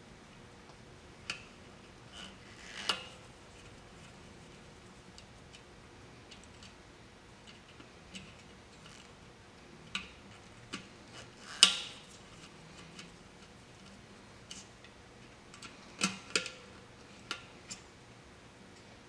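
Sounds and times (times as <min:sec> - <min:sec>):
clicks and taps of wiring work: 0:06.3 - 0:06.8, 0:09.8 - 0:16.6.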